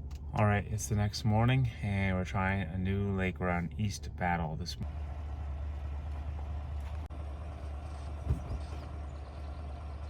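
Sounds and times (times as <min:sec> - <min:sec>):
boat motor running: 0:04.8 - 0:10.0.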